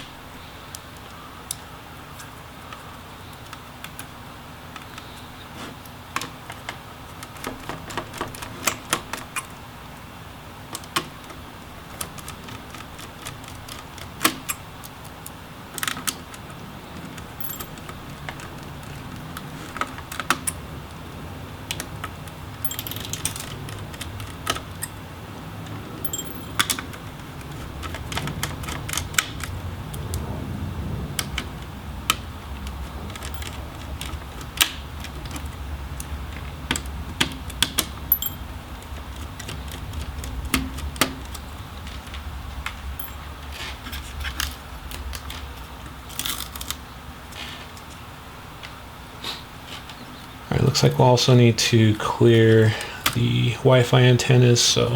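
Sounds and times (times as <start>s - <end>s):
tools clicking on laptop parts: 26.0s - 29.6s, 32.6s - 41.4s.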